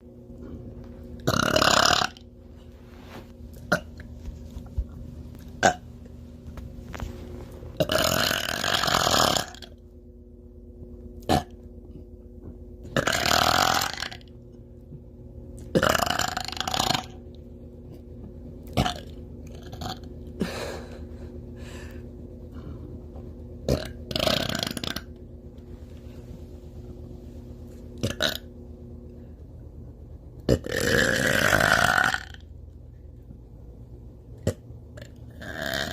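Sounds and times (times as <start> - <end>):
faint steady hum: 0.0 - 35.9
woman belching loudly: 1.2 - 2.2, 7.8 - 9.6, 13.0 - 14.2, 15.7 - 17.2, 23.7 - 25.1, 30.5 - 32.4.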